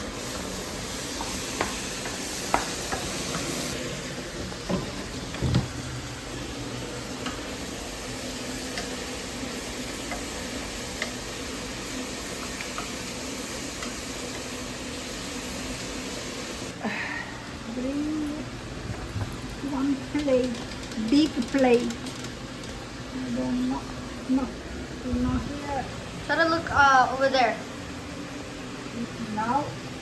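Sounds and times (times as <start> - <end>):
onions sizzling in a pot: 0.0 - 16.8.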